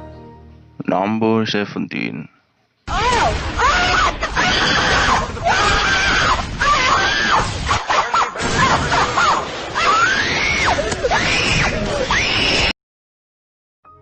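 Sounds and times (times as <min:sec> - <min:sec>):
music: 0:00.0 - 0:01.0
high-pitched voice screaming: 0:02.9 - 0:12.7.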